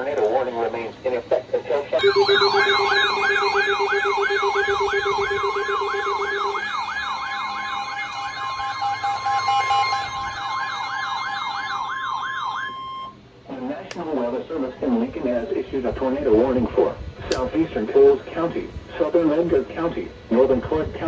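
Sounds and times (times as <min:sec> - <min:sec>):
low steady tone: 0:02.0 - 0:11.9
electronic warbling siren tone: 0:02.0 - 0:13.2
steady high tone: 0:02.0 - 0:13.2.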